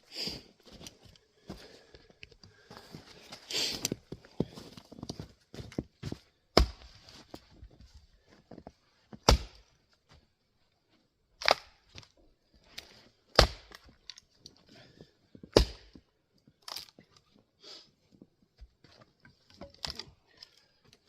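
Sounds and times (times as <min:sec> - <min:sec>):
axe splitting wood: 0:06.6 - 0:06.9, 0:09.2 - 0:09.6, 0:11.4 - 0:12.0, 0:13.3 - 0:14.0, 0:15.5 - 0:16.0, 0:19.6 - 0:20.1.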